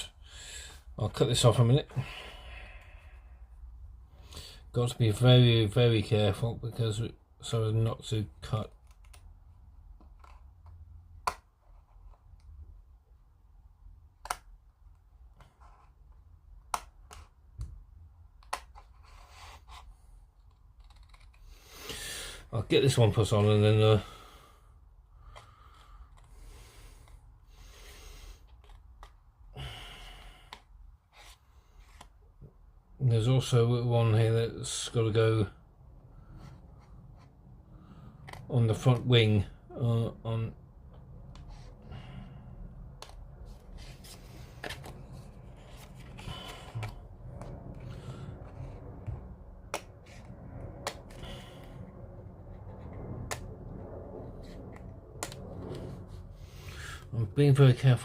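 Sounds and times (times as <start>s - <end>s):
person breathing close to microphone: 0.1s - 1.0s, 1.9s - 4.7s, 21.4s - 22.5s, 24.0s - 28.8s, 29.5s - 32.0s, 41.5s - 49.0s, 51.1s - 52.2s, 56.3s - 57.2s.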